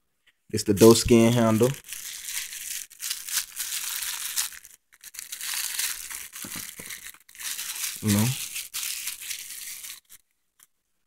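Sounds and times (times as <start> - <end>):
packaging crinkling and rustling: 0.7 - 10.3.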